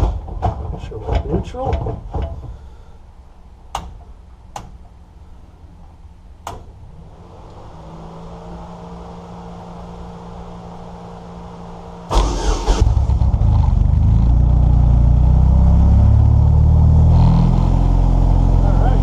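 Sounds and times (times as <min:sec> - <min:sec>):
fuel pump humming: 0:00.0 - 0:07.6.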